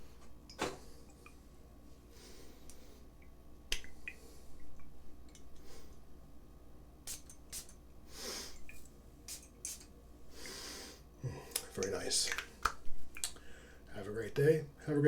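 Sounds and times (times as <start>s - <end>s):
faint short hisses: 7.1s - 8.7s.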